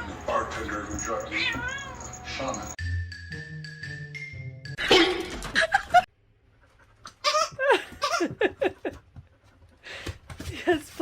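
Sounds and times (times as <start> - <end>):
person laughing: 4.8 - 6.1, 7.3 - 9.0.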